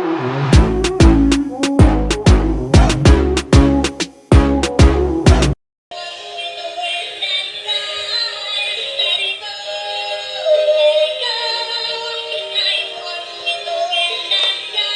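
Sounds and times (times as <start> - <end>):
tinny electronic children's song: 0.3 - 14.9
loud beat music: 0.5 - 5.6.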